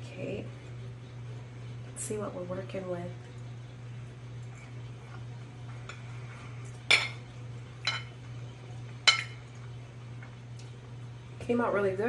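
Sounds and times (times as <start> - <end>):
cutlery clinking on a dish: 7.8 - 8.1, 9.1 - 9.4.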